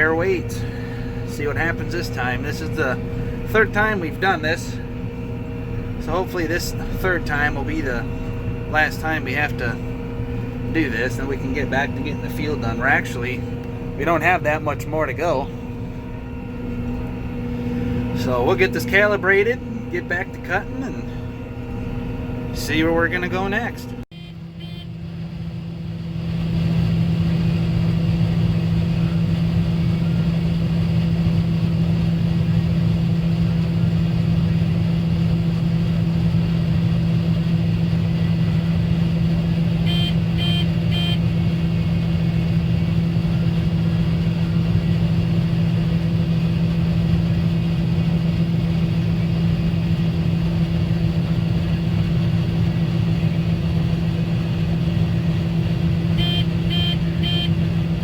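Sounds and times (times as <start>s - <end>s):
combine harvester droning: 0.0s - 58.0s
short electronic beeps: 39.9s - 41.2s, 56.2s - 57.6s.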